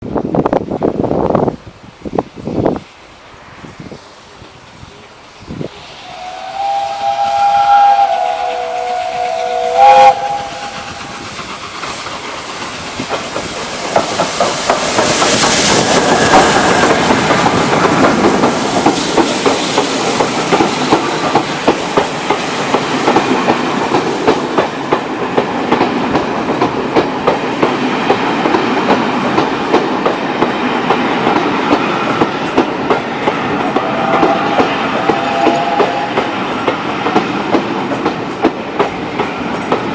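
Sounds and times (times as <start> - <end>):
steam hissing: 0.9 - 39.9
steam whistle: 5.8 - 11.3, 33.8 - 36.4
train wheels clacking over rail joints: 6.2 - 39.9.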